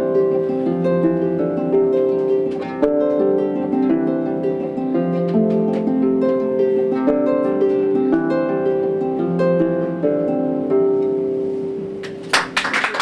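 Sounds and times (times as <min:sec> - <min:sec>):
harp-like plucked melody: 0:00.0 - 0:12.5.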